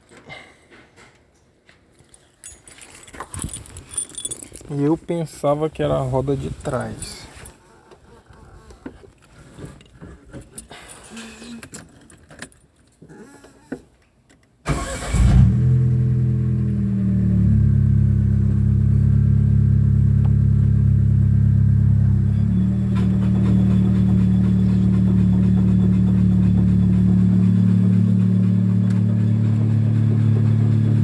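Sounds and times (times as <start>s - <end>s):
keys jangling: 2.0s - 4.8s, 6.4s - 7.6s, 10.4s - 12.9s
car starter cranking: 14.7s - 17.1s, 22.0s - 31.0s
car engine idling: 14.7s - 31.0s.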